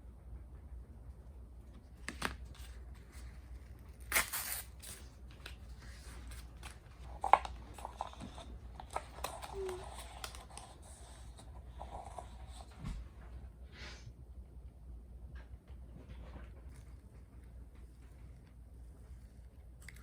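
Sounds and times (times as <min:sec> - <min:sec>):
tearing rustle: 0:02.5 - 0:07.8.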